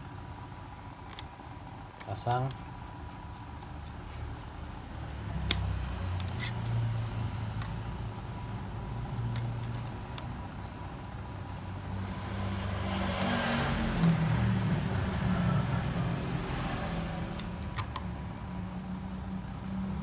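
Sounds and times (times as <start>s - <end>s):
steady low hum: 0.0s - 20.0s
vehicle passing by: 11.7s - 17.7s.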